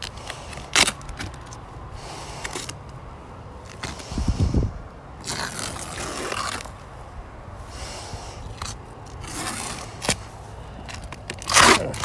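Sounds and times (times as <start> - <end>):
tape peeling off: 5.2 - 6.8.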